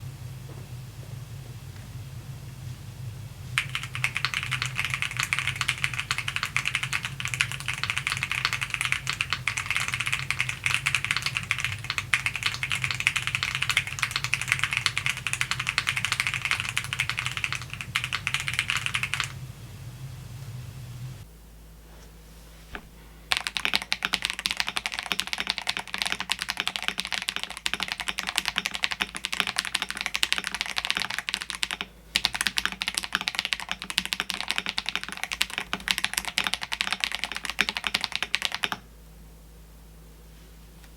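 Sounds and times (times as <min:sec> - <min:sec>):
steady low hum: 0:00.0 - 0:40.9
fast typing on mechanical keyboard: 0:03.6 - 0:19.4, 0:23.3 - 0:38.8.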